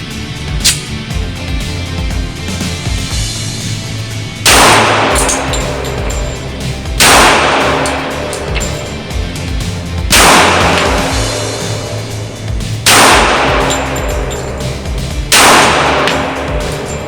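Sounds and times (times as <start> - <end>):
background music with bass: 0.0 - 17.0
pistol shots: 0.6 - 0.9, 4.5 - 9.1, 10.1 - 12.0, 12.8 - 14.6, 15.2 - 17.0.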